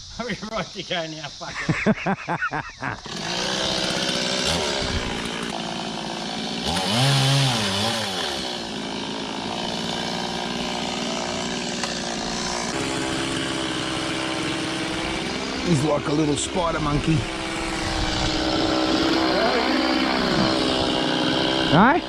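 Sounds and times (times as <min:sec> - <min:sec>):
chainsaw engine running: 0:02.8 - 0:22.0.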